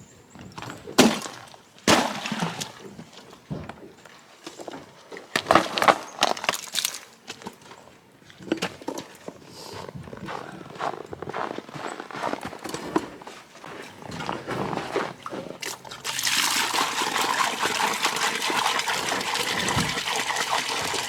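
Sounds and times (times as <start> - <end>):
ice knocked out of buckets: 0.6 - 3.2, 5.3 - 7.2, 14.1 - 21.0
cracking clattering ice: 5.4 - 7.5.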